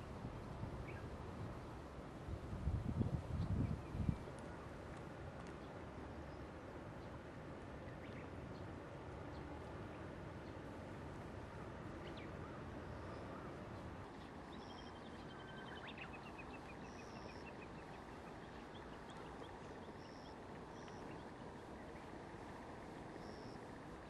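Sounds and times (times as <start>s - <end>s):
low outdoor rumble: 0.0s - 24.0s
small birds chirping: 12.0s - 23.6s.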